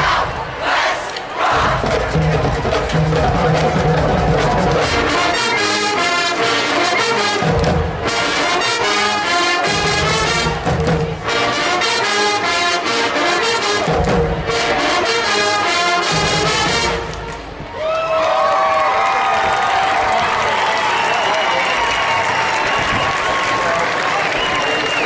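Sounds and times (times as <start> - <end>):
pounding drum line: 0.0 - 5.5, 7.0 - 8.8, 9.6 - 11.6, 13.6 - 14.8
marching band playing: 0.0 - 17.7.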